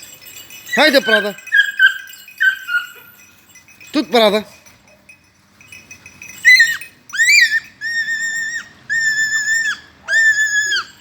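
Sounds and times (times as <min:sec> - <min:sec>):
dog whining and yelping: 0:00.6 - 0:03.3, 0:06.3 - 0:11.0.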